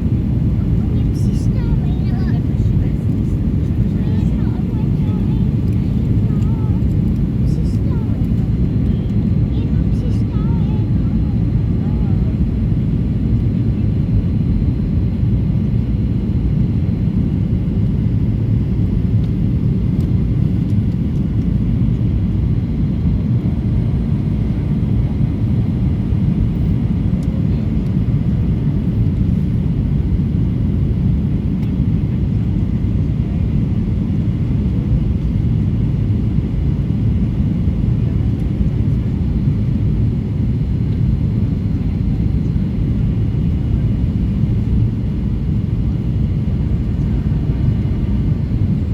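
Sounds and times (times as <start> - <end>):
airliner low rumble: 0.0 - 48.9.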